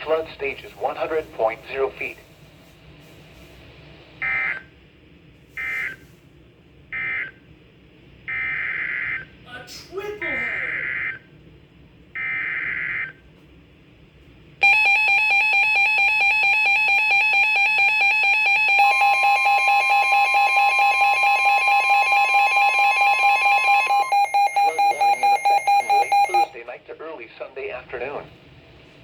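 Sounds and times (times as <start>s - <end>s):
steady warning tone: 4.2s - 4.8s, 14.6s - 26.6s
fast-pulsing electronic alarm beep: 14.6s - 26.5s.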